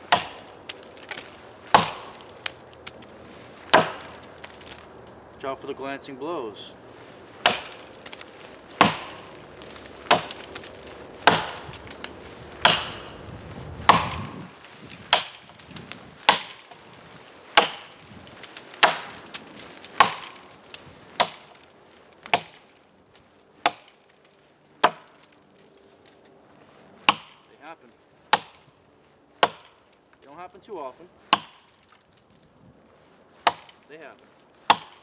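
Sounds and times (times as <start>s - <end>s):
axe chopping log: 0.0s - 4.9s, 7.3s - 13.2s, 13.8s - 16.9s, 17.5s - 22.7s, 23.6s - 24.2s, 24.8s - 25.3s, 27.0s - 27.4s, 28.3s - 28.7s, 29.4s - 29.8s, 31.2s - 32.0s, 33.4s - 33.9s, 34.6s - 35.0s.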